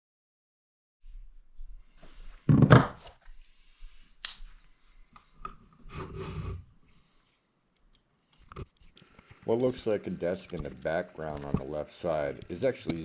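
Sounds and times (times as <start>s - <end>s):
rubbing and scraping on wood: 5.6s - 7.4s, 8.8s - 13.0s
sharp click: 9.0s - 13.0s.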